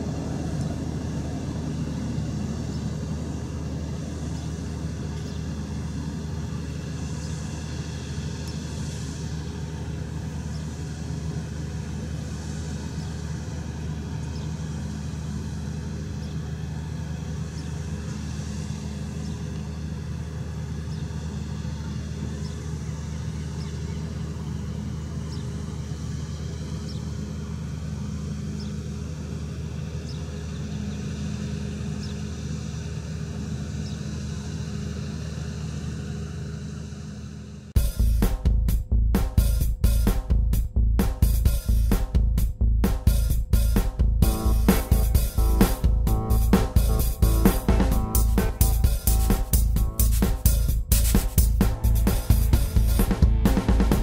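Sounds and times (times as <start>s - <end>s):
low machinery drone: 0.0s - 54.0s
machinery humming tones: 43.2s - 54.0s.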